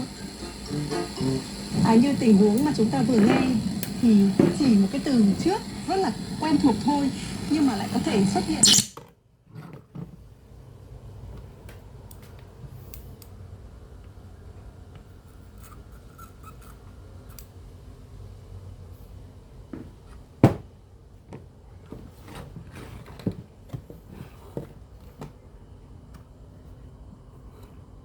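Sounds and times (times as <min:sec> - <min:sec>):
faint steady hum: 0:00.0 - 0:08.9.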